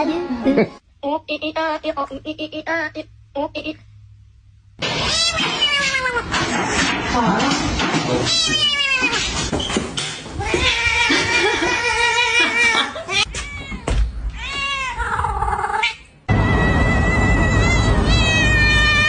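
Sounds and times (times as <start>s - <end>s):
cats meowing and yowling: 4.9s - 6.4s, 8.3s - 9.4s, 10.4s - 19.0s
rumbling background: 13.8s - 19.0s.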